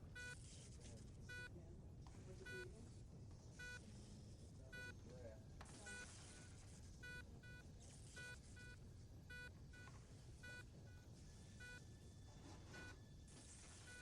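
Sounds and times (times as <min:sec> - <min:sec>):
patient monitor beeps: 0:00.0 - 0:00.4, 0:01.3 - 0:01.5, 0:02.4 - 0:02.7, 0:03.6 - 0:03.8, 0:04.7 - 0:05.0, 0:05.8 - 0:06.4, 0:07.0 - 0:11.9, 0:12.6 - 0:13.0, 0:13.7 - 0:14.0
low background hum: 0:00.0 - 0:14.0.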